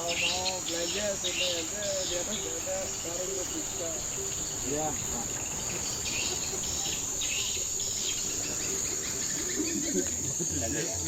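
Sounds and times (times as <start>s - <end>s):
insect chorus drone: 0.0s - 11.0s.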